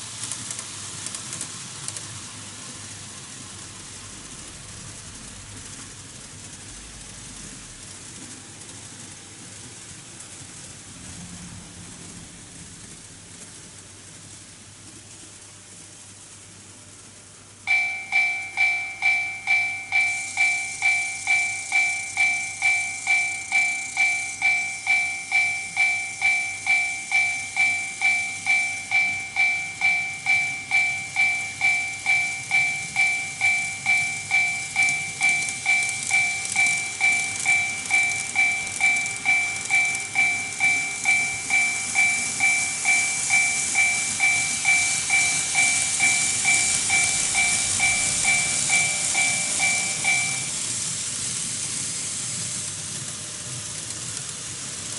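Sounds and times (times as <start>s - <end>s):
model trains running: 0.0s - 54.9s
level crossing bell ringing: 17.7s - 50.6s.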